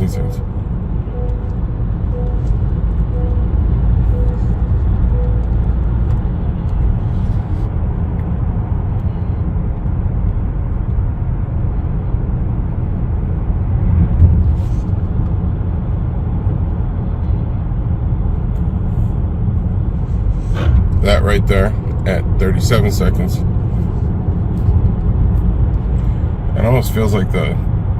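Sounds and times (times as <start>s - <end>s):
car road and engine rumble: 0.0s - 27.9s.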